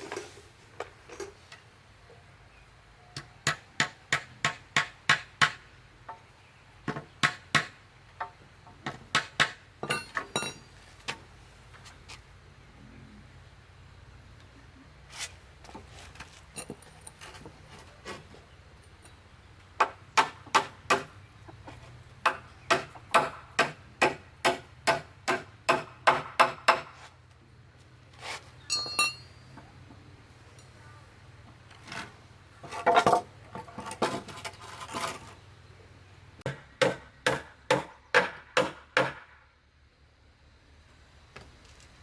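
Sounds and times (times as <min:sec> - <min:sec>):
hand tool striking wood: 0:06.9 - 0:11.2, 0:19.8 - 0:27.1, 0:36.4 - 0:39.4
brief metallic ring: 0:28.7 - 0:29.4.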